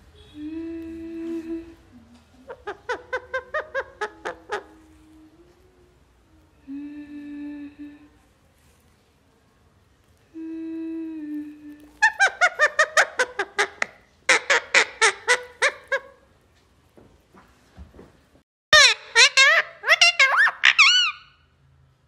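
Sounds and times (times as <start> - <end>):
parrot calling: 2.5 - 4.8, 12.0 - 16.2, 18.8 - 21.4.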